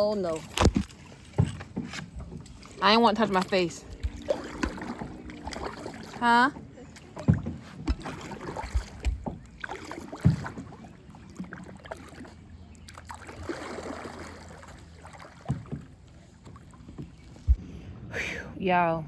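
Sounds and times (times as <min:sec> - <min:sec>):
paddle splashing water: 0:00.0 - 0:17.7
short dull knocks: 0:07.0 - 0:10.7.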